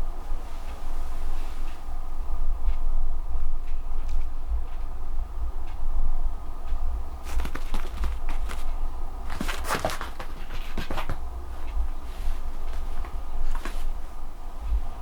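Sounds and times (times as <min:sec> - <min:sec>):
low steady hum: 0:00.0 - 0:15.0
dog claws clicking on hard floor: 0:07.2 - 0:13.9.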